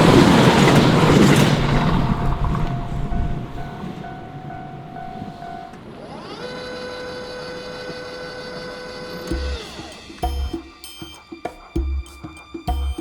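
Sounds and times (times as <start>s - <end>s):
train rumble: 0.0s - 8.7s
barrier gate motor whining: 0.0s - 10.6s.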